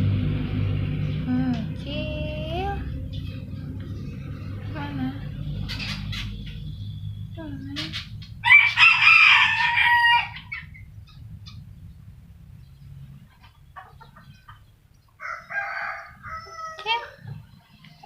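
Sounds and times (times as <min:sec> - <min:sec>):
faint bird chirps: 0:05.3 - 0:08.4.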